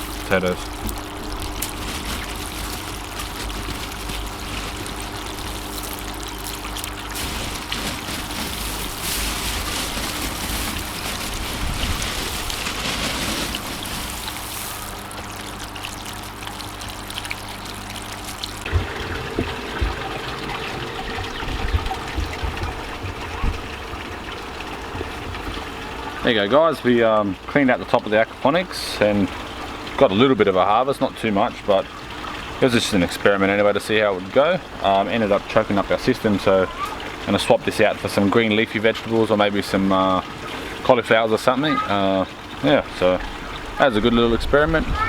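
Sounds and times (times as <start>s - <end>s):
water trickling and splashing: 0.0s - 45.0s.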